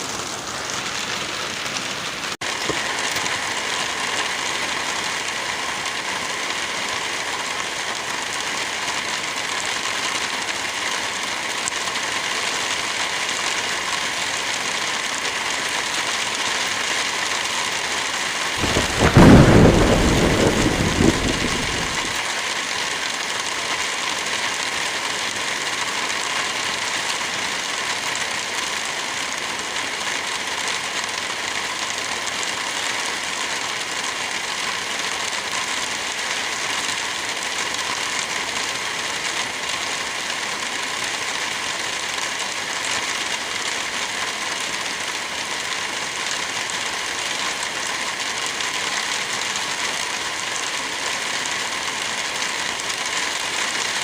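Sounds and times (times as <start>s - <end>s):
heavy rain: 0.0s - 54.0s
thunder rumbling: 18.6s - 22.2s.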